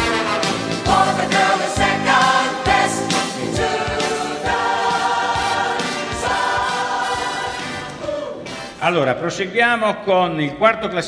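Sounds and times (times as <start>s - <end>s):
song with singing over a beat: 0.0s - 8.8s.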